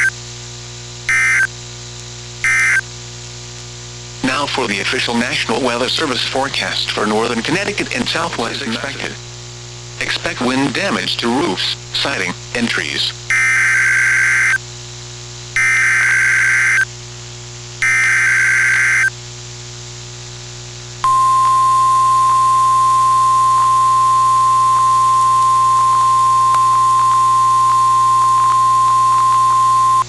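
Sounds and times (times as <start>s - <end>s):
steady warning alarm tone: 1.1s - 1.5s, 2.4s - 2.8s, 13.3s - 14.6s, 15.6s - 16.8s, 17.8s - 19.1s, 21.0s - 30.0s.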